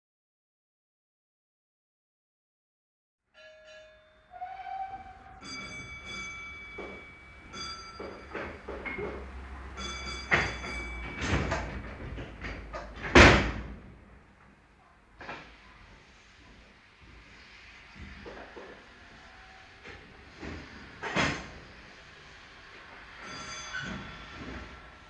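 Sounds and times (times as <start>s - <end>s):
steam train whistle: 4.3s - 8.3s, 17.5s - 25.0s.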